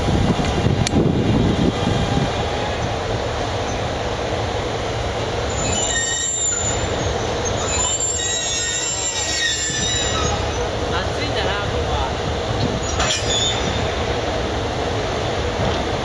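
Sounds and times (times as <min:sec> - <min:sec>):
freight train rumbling: 0:00.0 - 0:16.0
train wheels squealing: 0:05.4 - 0:10.7, 0:12.8 - 0:14.0.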